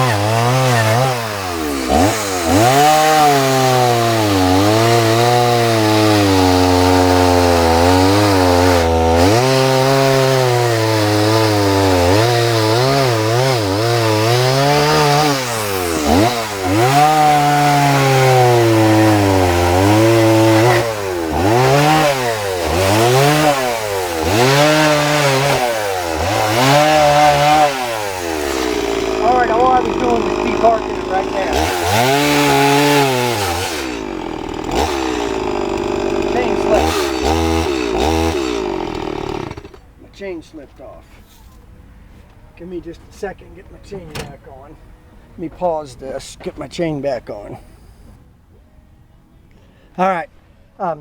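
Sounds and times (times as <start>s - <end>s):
chainsaw cutting log: 0.0s - 39.9s.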